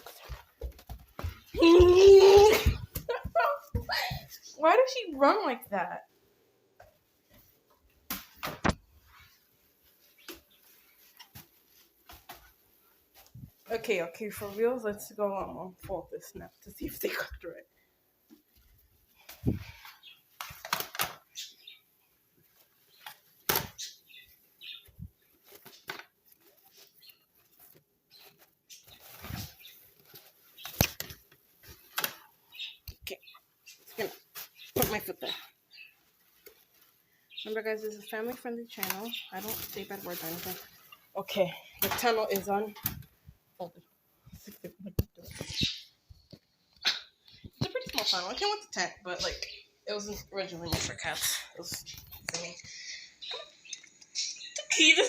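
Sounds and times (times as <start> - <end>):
fabric tunnel rustling: 33.8 - 43.1.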